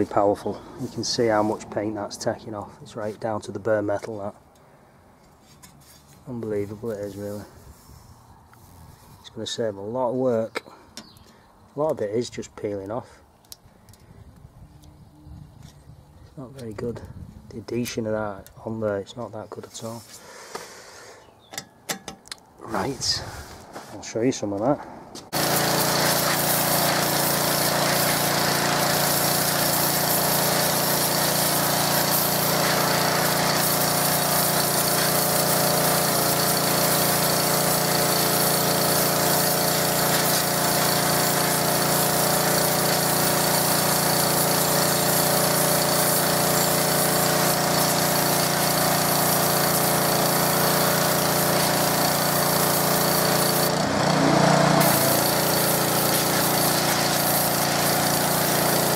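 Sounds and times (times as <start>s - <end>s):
pressure washer engine drone: 0.0s - 3.2s, 25.2s - 58.9s
high-pressure water jet hissing: 25.3s - 58.9s.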